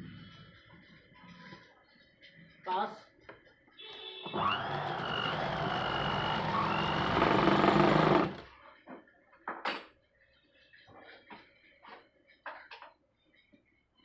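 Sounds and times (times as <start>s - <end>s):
sewing machine motor whining: 4.3s - 8.5s.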